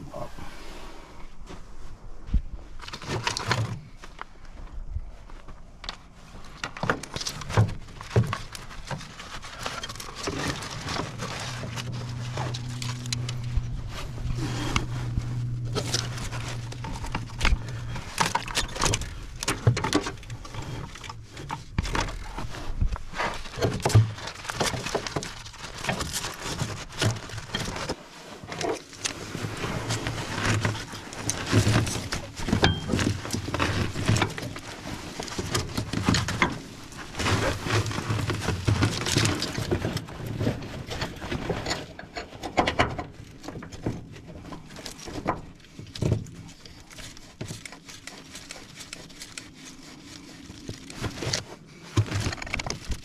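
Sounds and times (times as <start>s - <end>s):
low steady hum: 0.0s - 53.0s
metal tools clinking and rattling: 30.6s - 34.4s.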